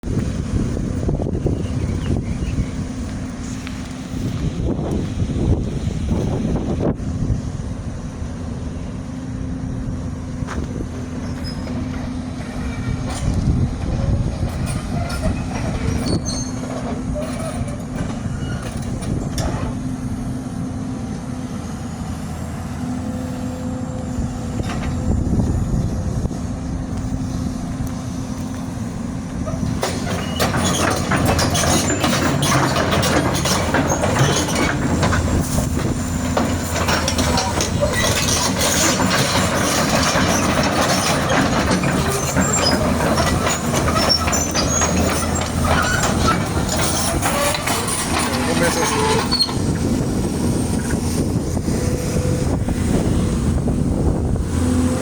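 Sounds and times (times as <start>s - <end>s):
diesel engine running: 0.0s - 55.0s
steel tracks clanking: 10.0s - 20.3s, 23.0s - 55.0s.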